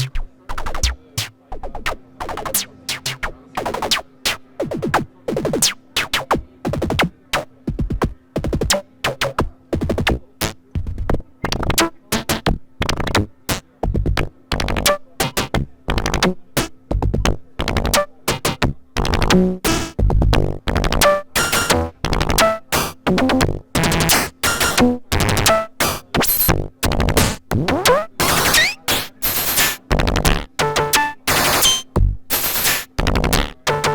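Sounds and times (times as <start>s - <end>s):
faint synthesizer drone: 13.5s - 33.9s
synthesizer percussive hits: 20.0s - 33.9s.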